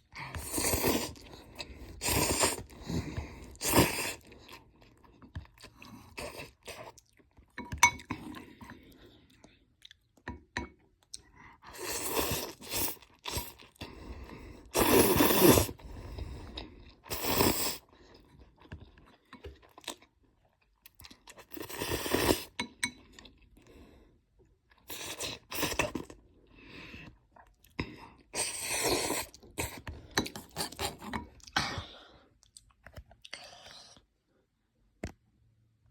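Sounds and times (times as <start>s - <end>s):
person slurping noodles: 0.2s - 4.4s, 11.7s - 17.9s, 21.5s - 22.6s, 28.4s - 31.6s
person chewing: 0.2s - 8.8s.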